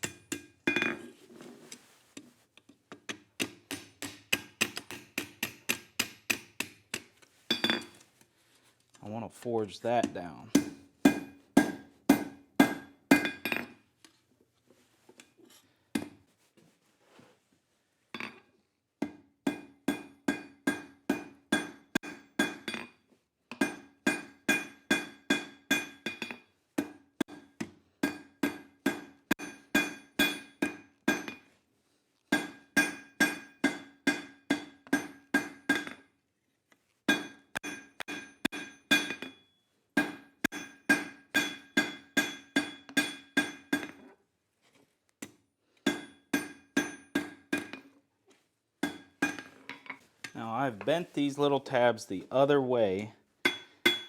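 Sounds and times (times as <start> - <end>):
hammer striking steel on anvil: 0.0 - 1.0, 3.1 - 8.0, 10.0 - 13.7, 19.0 - 22.9, 23.6 - 31.4, 32.3 - 36.1, 37.1 - 44.0, 45.9 - 47.9, 48.8 - 49.5, 53.4 - 54.0.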